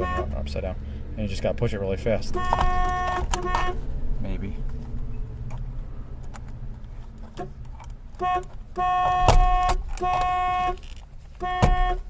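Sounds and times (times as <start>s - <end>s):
car horn honking: 0.0s - 0.6s, 2.1s - 3.9s, 7.3s - 12.0s
horn pad clicks: 2.4s - 3.8s.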